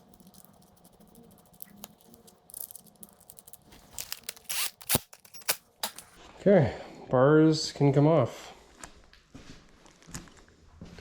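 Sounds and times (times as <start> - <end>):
handling noise: 1.7 - 6.2
tools clicking and knocking: 4.0 - 6.2.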